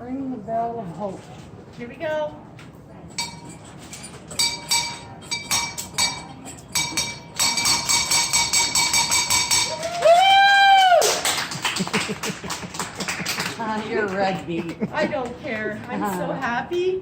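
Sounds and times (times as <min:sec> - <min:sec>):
hand bell ringing: 0:03.2 - 0:09.9
person whooping: 0:09.7 - 0:11.3
applause: 0:09.7 - 0:15.4.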